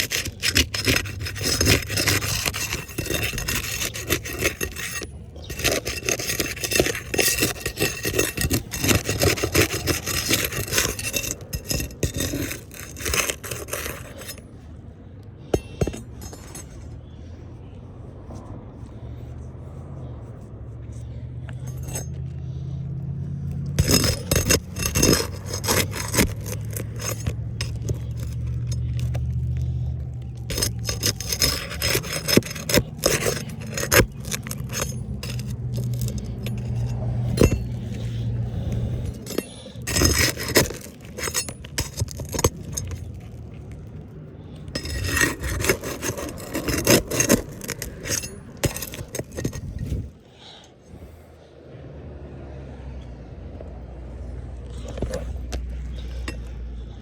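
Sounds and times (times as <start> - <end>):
scraping and rubbing strokes: 0.0 - 14.8, 15.4 - 17.3, 18.3 - 22.8, 23.4 - 43.8, 44.5 - 50.2.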